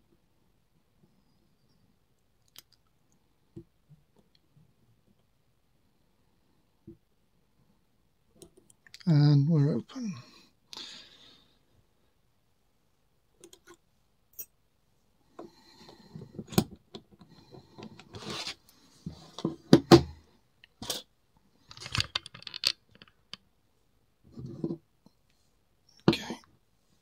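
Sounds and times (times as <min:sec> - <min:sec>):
metal lock parts clicking and clinking: 0:21.7 - 0:23.4.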